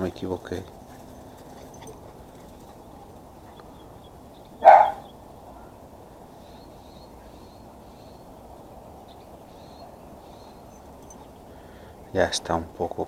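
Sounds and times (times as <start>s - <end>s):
small dog barking: 4.6s - 5.1s.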